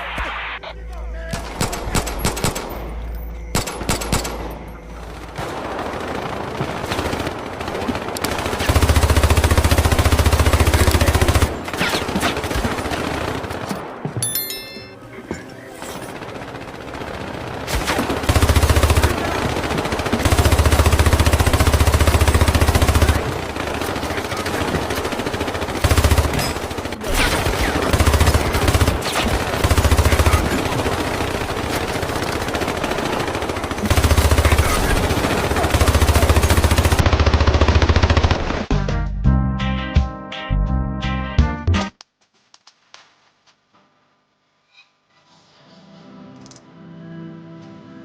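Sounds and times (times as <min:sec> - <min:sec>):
video game automatic gunfire: 0:03.5 - 0:14.0, 0:16.1 - 0:38.7.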